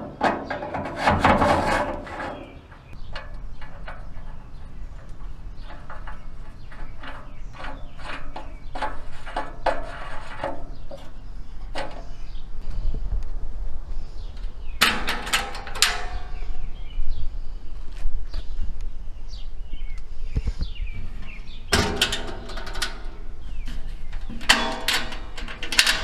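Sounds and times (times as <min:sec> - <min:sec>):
knocks and clunks: 0:00.0 - 0:11.1, 0:21.7 - 0:26.0
metallic clatter: 0:00.0 - 0:12.2, 0:14.8 - 0:16.6, 0:21.7 - 0:26.0.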